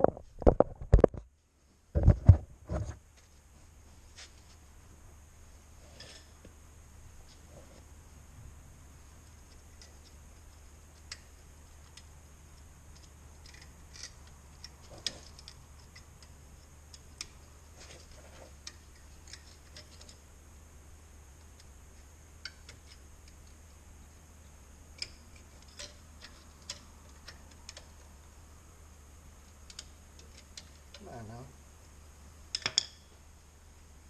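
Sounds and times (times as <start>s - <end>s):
steady low hum: 0.0s - 34.0s
light metal clicks and taps: 24.9s - 28.1s, 29.5s - 31.0s.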